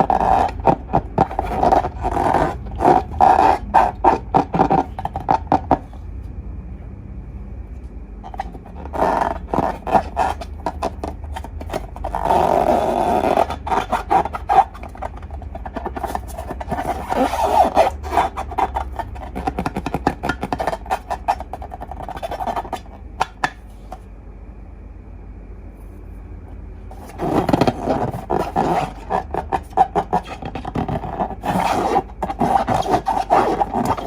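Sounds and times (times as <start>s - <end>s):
slime squelching and crackling: 0.0s - 5.9s, 8.3s - 23.6s
steady low hum: 0.0s - 34.0s.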